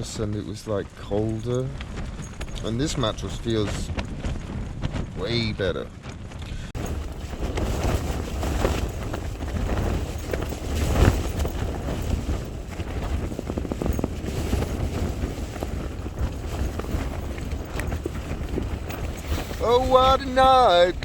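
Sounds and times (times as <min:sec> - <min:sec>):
tent fabric flapping: 0:00.0 - 0:21.0
wind gusts on microphone: 0:00.0 - 0:21.0.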